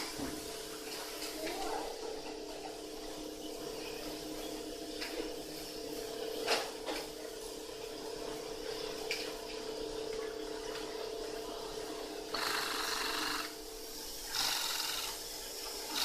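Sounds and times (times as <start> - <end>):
sewing machine humming: 12.3 - 13.6, 14.2 - 16.0.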